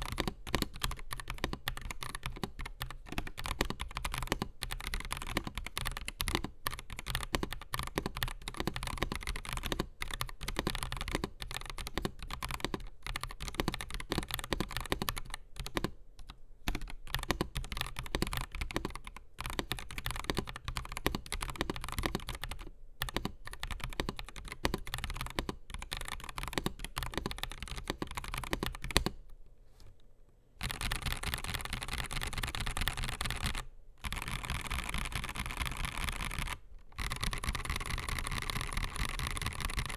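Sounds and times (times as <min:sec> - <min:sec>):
mechanical keyboard typing: 0:00.0 - 0:29.2, 0:30.6 - 0:39.9.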